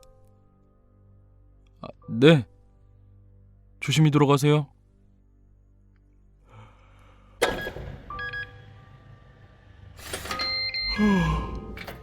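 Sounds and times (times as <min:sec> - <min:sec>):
eerie music tones: 0:06.3 - 0:12.0
door scraping and creaking: 0:09.5 - 0:12.0.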